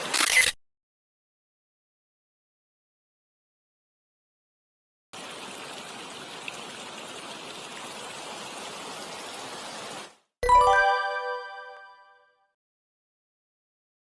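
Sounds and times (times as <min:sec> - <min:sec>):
mountain stream flowing: 0:05.2 - 0:10.1.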